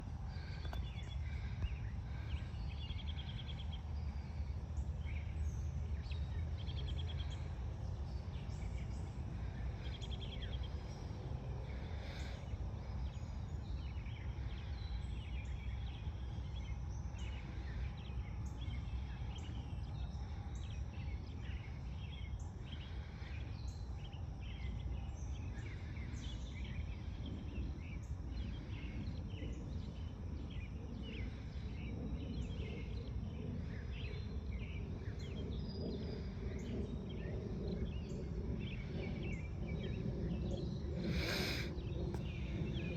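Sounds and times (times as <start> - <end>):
birds chirping: 0.0 - 42.9
steady low rumble: 0.0 - 42.9
insects trilling: 25.4 - 42.9.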